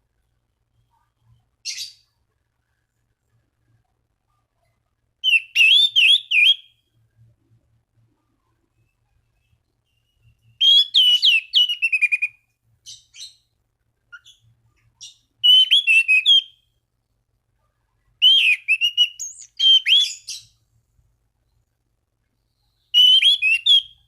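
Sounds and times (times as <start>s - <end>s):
thrush whistled song: 5.2s - 6.9s, 9.9s - 13.5s, 14.2s - 16.7s, 18.2s - 20.6s, 22.5s - 24.0s.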